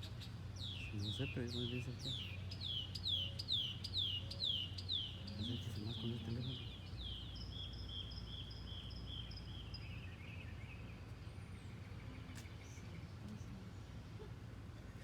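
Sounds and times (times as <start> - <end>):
bird chirping: 0.0 - 14.3
low outdoor rumble: 0.0 - 15.0.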